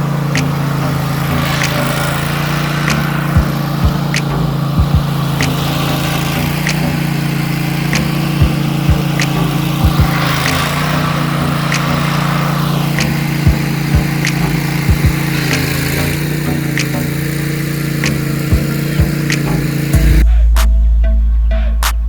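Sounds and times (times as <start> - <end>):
low thumps: 0.0 - 7.2, 7.9 - 12.2, 13.0 - 15.3
light ticking: 0.0 - 20.2
engine running steadily: 0.0 - 20.3.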